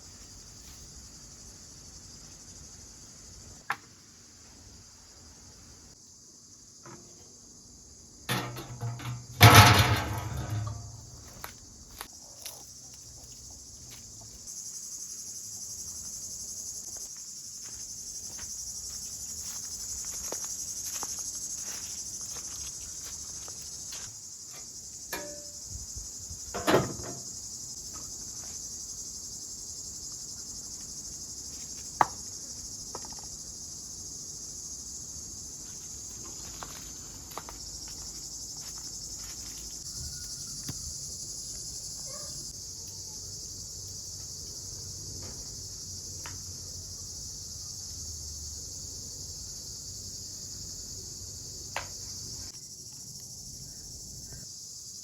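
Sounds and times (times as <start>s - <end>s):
crickets chirping: 0.0s - 55.0s
sharp knocks and clatters: 8.3s - 11.4s, 24.5s - 25.6s, 26.5s - 27.3s.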